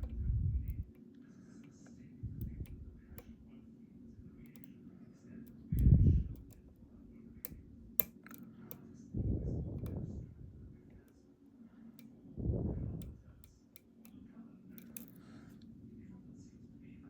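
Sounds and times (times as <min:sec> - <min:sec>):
lock pick clicking: 0:00.0 - 0:01.0, 0:02.4 - 0:03.3, 0:05.5 - 0:06.7, 0:07.4 - 0:08.5, 0:09.8 - 0:10.1, 0:14.8 - 0:15.2.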